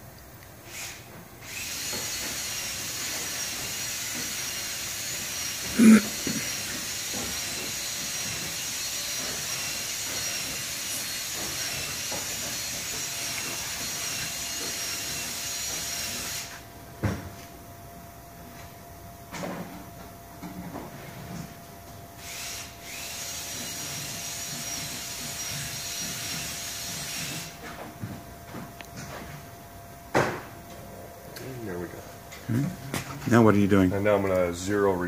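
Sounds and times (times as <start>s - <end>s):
router machine air hiss and whine: 0.6s - 16.7s, 22.2s - 27.7s.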